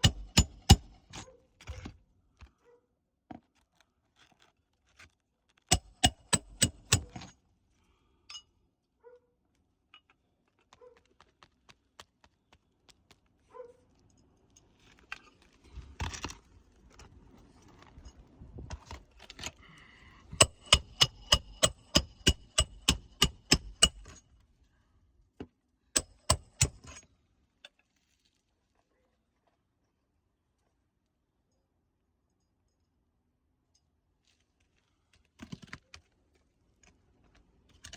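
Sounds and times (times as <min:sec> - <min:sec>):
hammer striking roofing nails: 0:00.0 - 0:01.1, 0:05.7 - 0:07.3, 0:20.4 - 0:24.2, 0:26.0 - 0:27.0
rustling and handling noises: 0:01.2 - 0:05.7, 0:09.4 - 0:19.9, 0:27.5 - 0:30.8.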